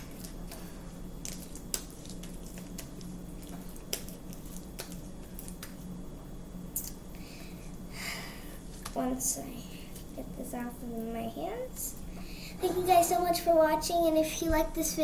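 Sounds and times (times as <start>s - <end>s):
slime squishing: 0.0s - 6.0s.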